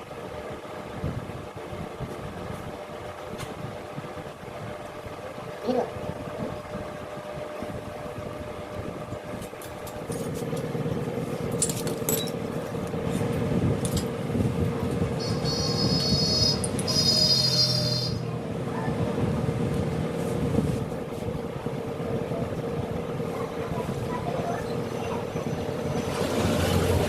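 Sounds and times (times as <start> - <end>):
motorcycle engine running: 9.6 - 27.0
high whistling tone: 15.2 - 18.2.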